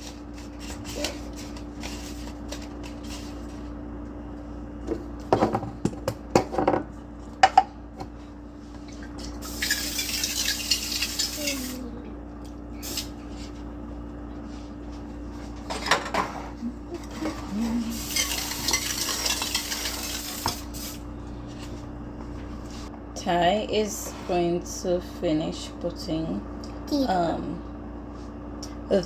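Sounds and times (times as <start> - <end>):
steady low hum: 0.0 - 29.0.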